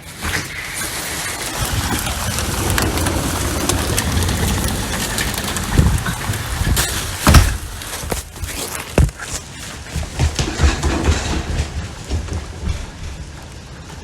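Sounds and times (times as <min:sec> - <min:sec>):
rain: 0:00.0 - 0:08.1, 0:12.5 - 0:14.0
heavy low rumbling: 0:01.5 - 0:08.4
sharp thumps: 0:06.7 - 0:11.6.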